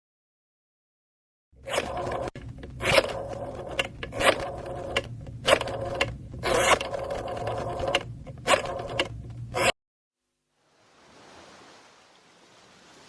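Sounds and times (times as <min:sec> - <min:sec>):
steady hum: 0:01.6 - 0:09.7
rasping scraping strokes: 0:08.4 - 0:09.8.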